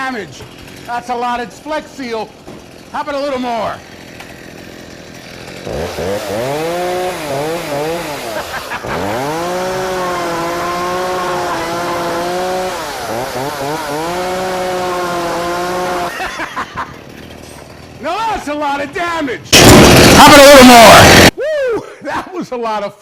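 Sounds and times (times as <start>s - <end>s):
chainsaw engine revving: 0.5s - 1.2s, 2.6s - 17.2s, 19.5s - 21.3s.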